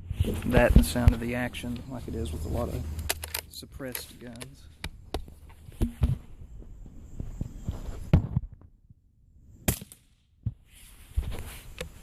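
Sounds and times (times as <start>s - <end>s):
sharp rifle bolt clicks: 2.9s - 5.0s.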